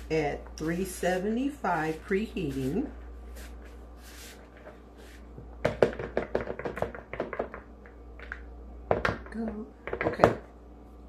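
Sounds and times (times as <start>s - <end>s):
soft rustling: 0.0s - 5.4s.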